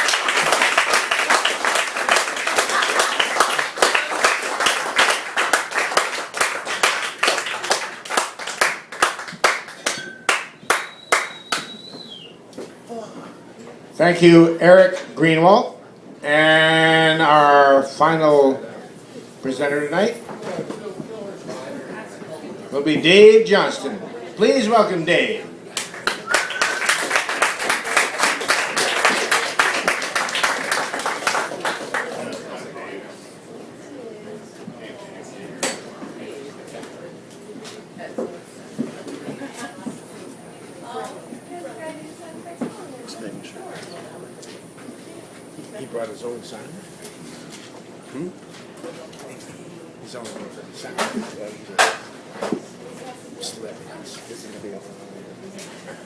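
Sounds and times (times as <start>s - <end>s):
audience applauding: 0.0s - 12.0s, 25.8s - 32.6s.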